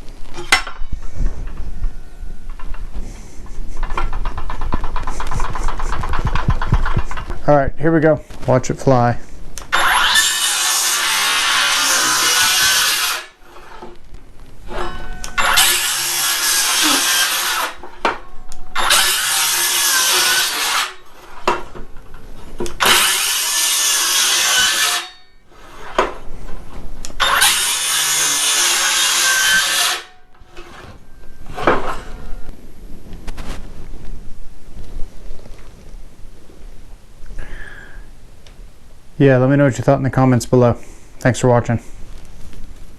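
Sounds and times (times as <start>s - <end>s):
circular saw cutting wood: 9.7s - 13.9s, 14.7s - 17.8s, 18.8s - 21.5s, 22.7s - 26.1s, 27.2s - 32.2s.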